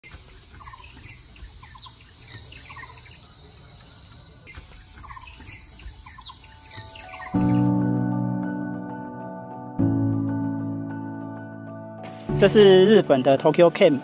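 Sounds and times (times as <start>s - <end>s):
bird chirps: 0.0s - 7.7s
insects droning: 0.0s - 7.7s.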